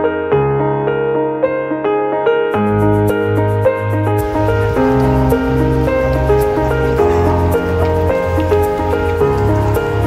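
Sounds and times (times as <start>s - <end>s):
soft slow instrumental music: 0.0s - 10.0s.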